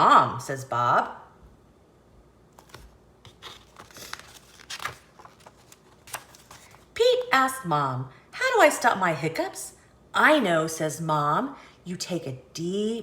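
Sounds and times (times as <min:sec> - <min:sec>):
paper rustling and crinkling: 0:02.5 - 0:07.0.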